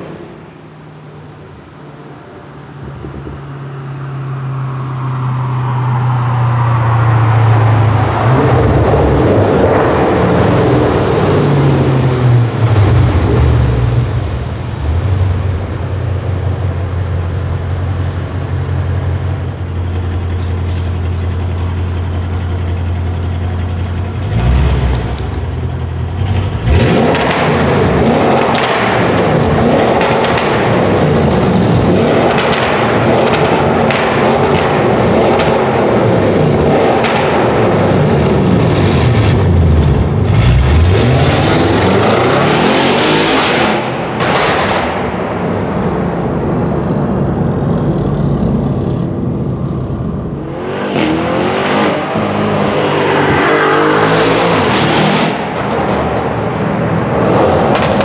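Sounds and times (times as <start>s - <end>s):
car engine drone: 0.0s - 58.0s
sharp exhaust bursts: 10.4s - 23.0s.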